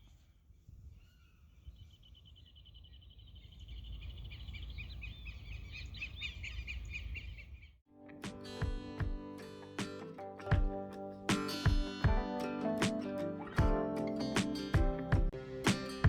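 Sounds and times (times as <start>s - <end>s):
songbird singing: 1.0s - 7.7s.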